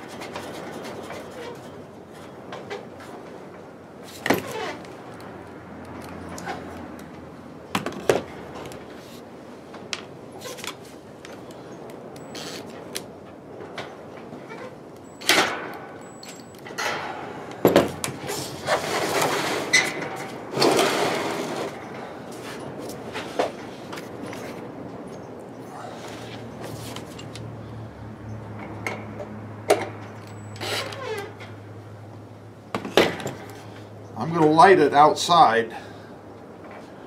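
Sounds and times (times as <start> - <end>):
scraping and rustling: 17.9 - 24.8, 25.8 - 27.5.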